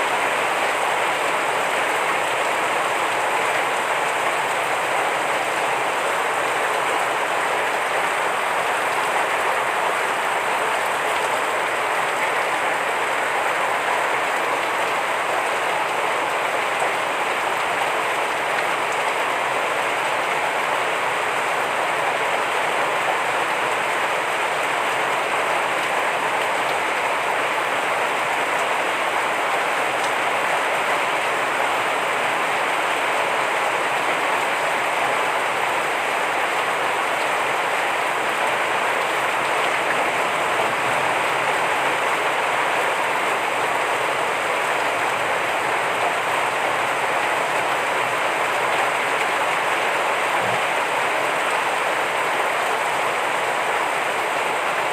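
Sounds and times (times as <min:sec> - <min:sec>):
heavy rain falling: 0:00.0 - 0:54.9.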